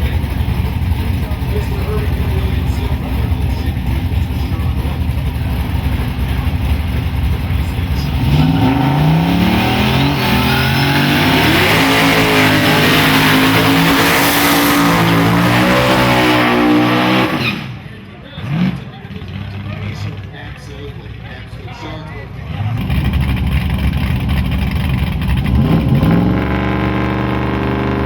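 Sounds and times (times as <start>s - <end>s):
race car engines rumbling: 0.0s - 28.0s
car accelerating through gears: 7.5s - 17.8s, 25.3s - 28.0s.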